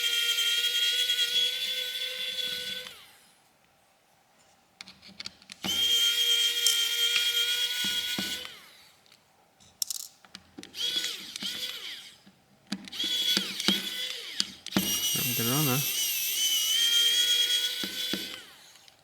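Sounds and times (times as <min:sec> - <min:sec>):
electric screwdriver whining: 0:00.0 - 0:03.1, 0:05.6 - 0:08.8, 0:10.7 - 0:12.2, 0:12.8 - 0:19.0.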